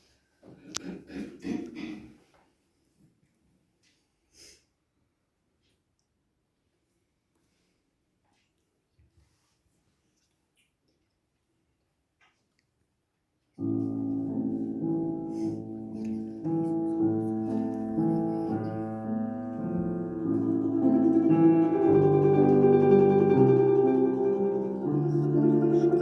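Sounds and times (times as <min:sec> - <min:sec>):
solo classical instrumental piece: 0:13.6 - 0:26.0.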